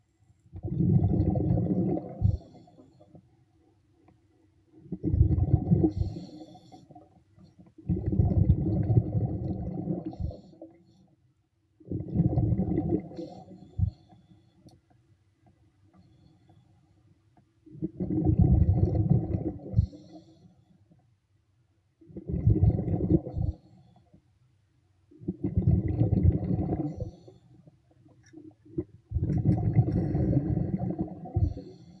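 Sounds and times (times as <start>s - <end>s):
underwater regulator bubbles: 0.5s - 3.2s, 4.8s - 7.1s, 7.7s - 10.8s, 11.8s - 14.3s, 17.7s - 20.2s, 22.0s - 23.7s, 25.2s - 27.4s, 28.2s - 32.0s
bubbling diver exhalations: 0.6s - 2.6s, 7.9s - 10.5s, 25.3s - 27.2s, 28.8s - 31.8s.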